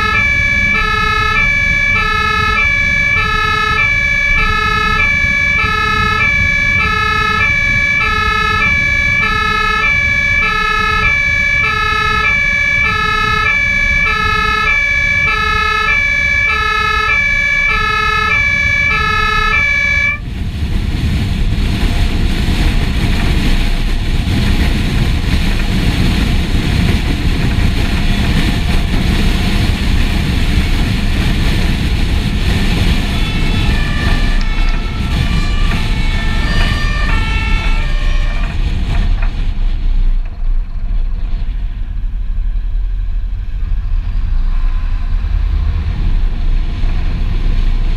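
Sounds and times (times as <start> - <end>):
two-tone siren: 0.0 - 20.3, 30.2 - 39.3
truck engine and road noise: 0.0 - 47.9.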